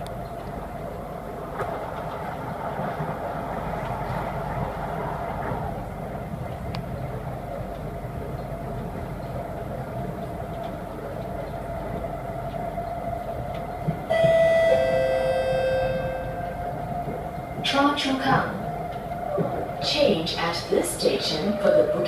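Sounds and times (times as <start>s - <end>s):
train rumble with electric whine: 0.0s - 22.0s
two-note chime: 14.1s - 16.6s.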